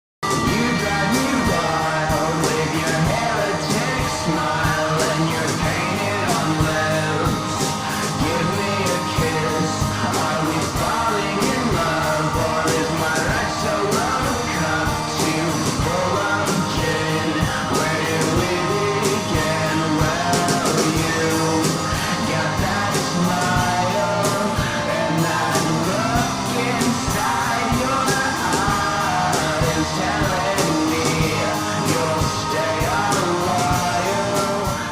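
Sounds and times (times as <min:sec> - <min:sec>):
song with singing over a beat: 0:00.2 - 0:34.9.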